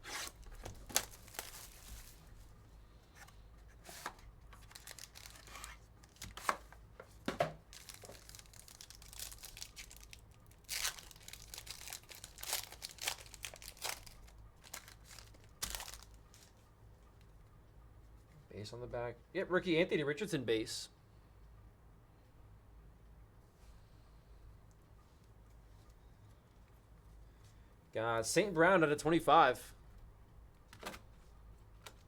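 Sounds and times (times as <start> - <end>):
packaging tearing and crinkling: 0.0 - 2.3, 4.0 - 6.6, 7.7 - 16.5.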